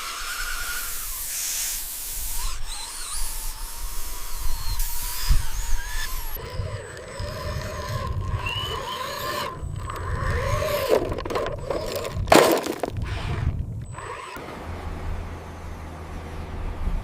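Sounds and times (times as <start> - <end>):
small electric motors whining: 0.0 - 14.4
scraping and grinding: 5.3 - 14.4.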